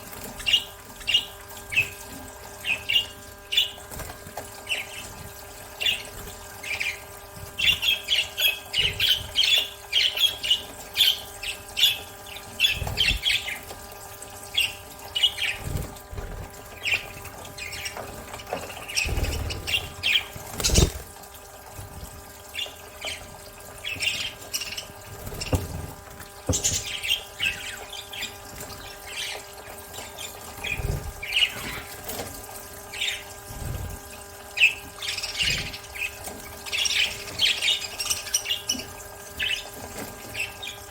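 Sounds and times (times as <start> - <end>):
steady background hum: 0.0 - 40.9
budgerigars chirping and squawking: 0.3 - 2.0, 5.8 - 7.0, 7.6 - 13.7, 14.5 - 21.1, 22.6 - 25.9, 26.5 - 32.2, 34.6 - 40.9.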